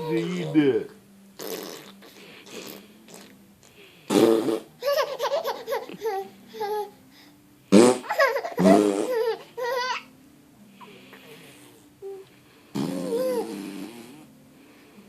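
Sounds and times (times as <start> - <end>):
baby laughing squeals: 4.8 - 6.9, 8.0 - 10.1, 13.0 - 13.6.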